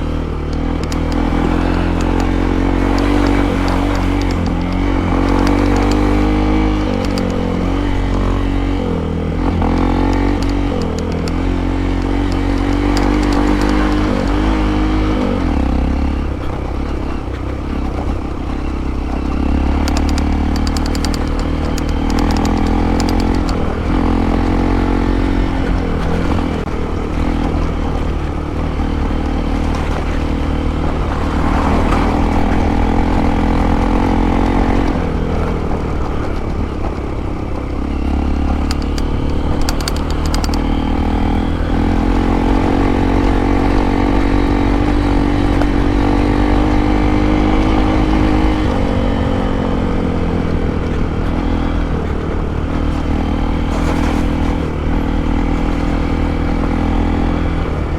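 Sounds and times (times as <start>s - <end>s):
motorcycle engine revving: 0.0s - 57.9s
rattling clicks: 0.1s - 57.3s.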